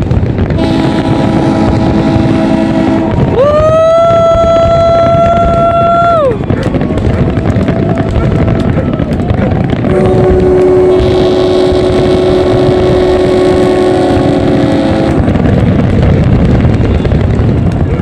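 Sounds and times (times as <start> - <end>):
boat engines rumbling: 0.0 - 18.0
horn blast: 0.6 - 3.3, 9.8 - 15.4.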